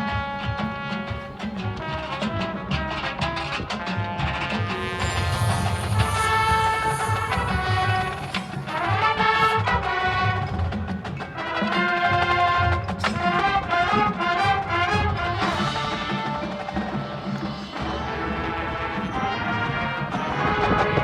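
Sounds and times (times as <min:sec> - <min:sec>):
brass chords: 0:00.0 - 0:21.0
drumline: 0:00.0 - 0:21.0
mallet percussion: 0:04.0 - 0:13.6, 0:15.0 - 0:21.0.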